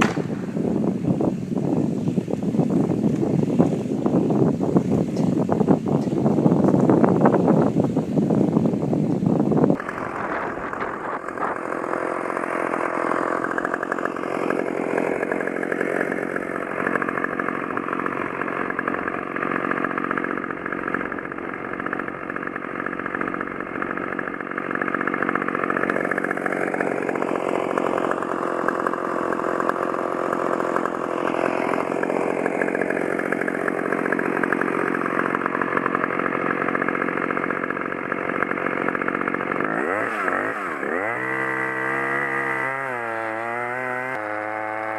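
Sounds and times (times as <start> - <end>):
chainsaw cutting wood: 0.0 - 44.9.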